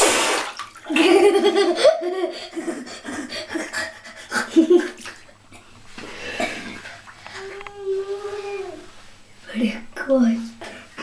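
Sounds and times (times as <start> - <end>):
water splashing in a bathtub: 0.0 - 8.9
human laughter: 0.9 - 5.3.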